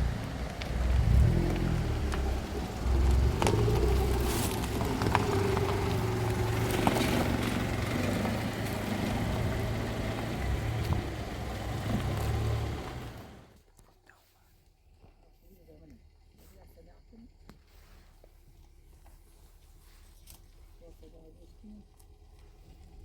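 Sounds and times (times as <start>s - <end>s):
engine running steadily: 0.0s - 13.6s.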